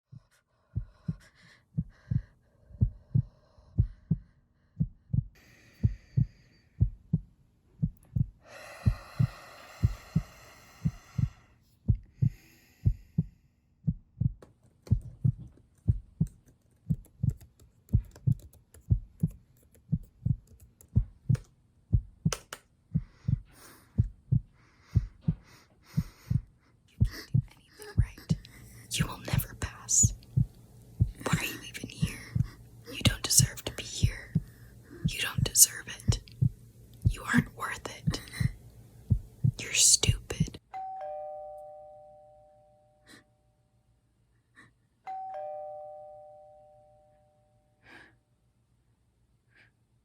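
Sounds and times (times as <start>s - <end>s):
heartbeat-like low thumps: 0.1s - 16.3s, 18.9s - 20.4s, 21.0s - 40.6s.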